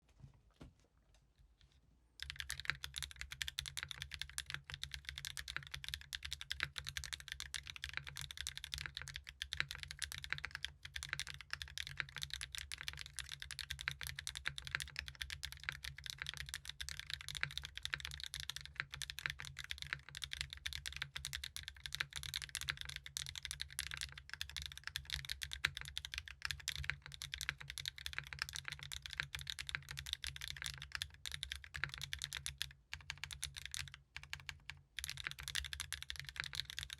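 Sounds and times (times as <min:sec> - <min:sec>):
fast typing on mechanical keyboard: 0:02.2 - 0:36.9.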